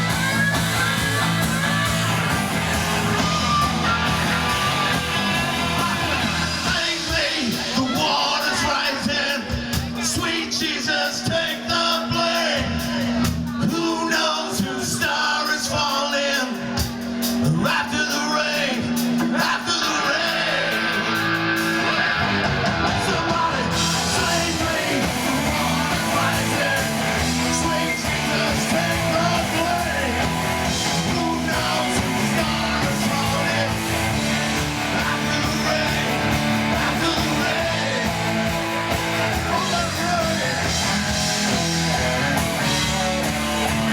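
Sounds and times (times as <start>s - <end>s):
electric guitar: 0.0s - 10.6s, 18.6s - 43.9s
person singing: 0.0s - 16.7s, 17.6s - 41.1s.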